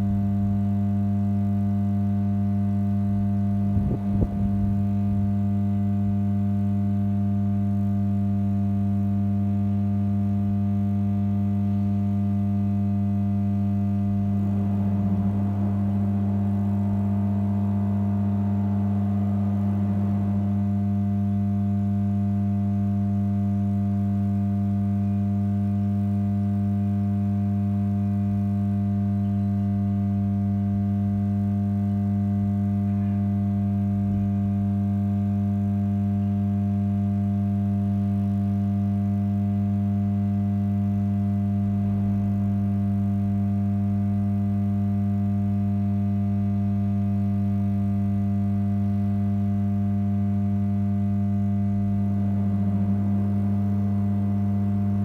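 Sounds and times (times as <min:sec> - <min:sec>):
steady low-pitched hum: 0:00.0 - 0:55.0
faint rushing sound: 0:13.7 - 0:23.4.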